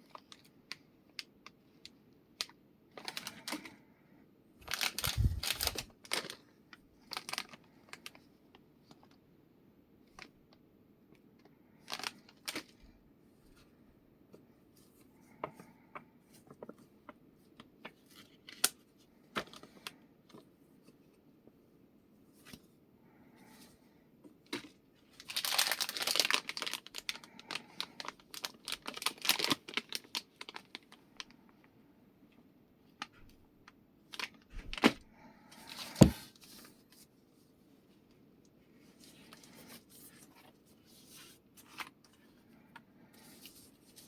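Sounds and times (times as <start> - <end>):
wrapping tearing and crinkling: 2.4 - 3.7, 4.6 - 8.2, 11.8 - 12.8, 24.6 - 31.3, 34.1 - 35.0.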